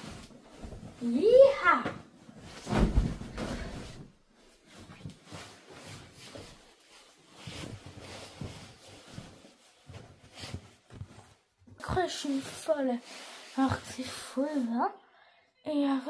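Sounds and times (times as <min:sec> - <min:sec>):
faint rustling: 0:02.2 - 0:14.9.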